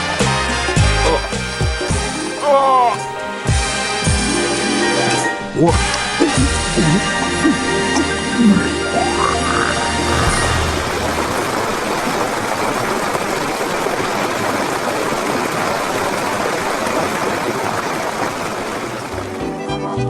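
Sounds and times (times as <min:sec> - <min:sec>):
steady rushing hiss: 0:10.0 - 0:14.5.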